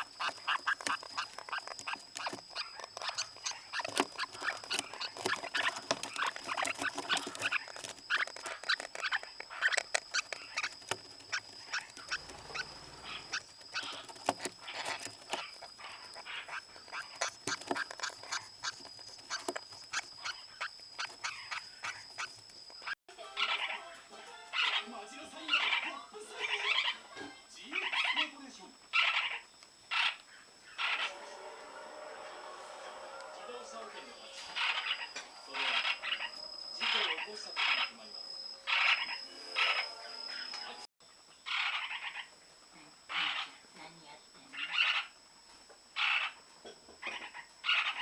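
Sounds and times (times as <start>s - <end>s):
parakeet chattering: 0.0s - 23.9s, 24.5s - 27.1s, 27.7s - 31.1s, 34.6s - 40.5s, 41.5s - 42.3s, 43.1s - 43.6s, 44.5s - 45.2s, 46.0s - 46.4s, 47.0s - 48.0s
parakeet chirping: 0.0s - 31.2s, 33.4s - 42.3s, 43.1s - 43.6s, 44.4s - 45.2s, 46.0s - 46.4s, 47.0s - 48.0s
thin steady high whine: 28.4s - 41.4s.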